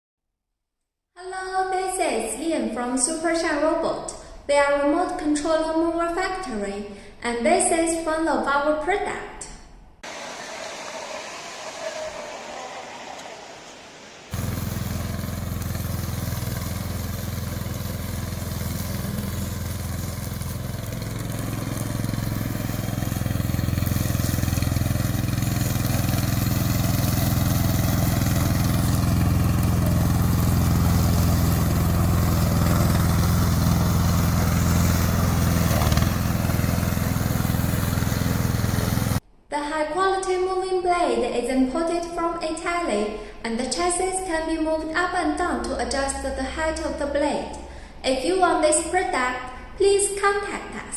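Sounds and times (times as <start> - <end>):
mower engine droning: 10.0 - 39.2.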